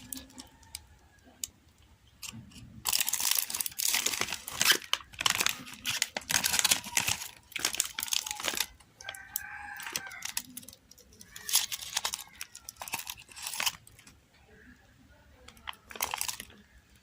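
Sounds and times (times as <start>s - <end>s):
wrapper crinkling and tearing: 0.0s - 0.9s, 2.2s - 14.2s, 15.5s - 16.6s
rooster crowing: 9.0s - 10.6s.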